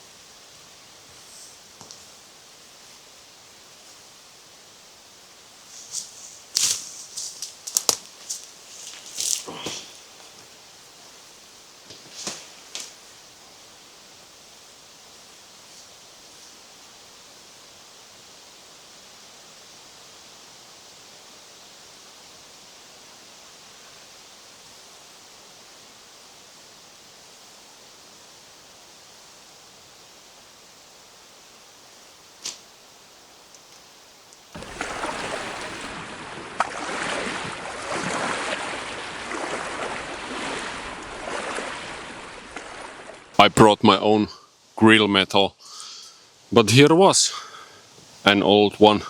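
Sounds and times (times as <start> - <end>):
wind and water rushing: 34.5 - 44.0
rough gusting wind noise: 34.6 - 43.4.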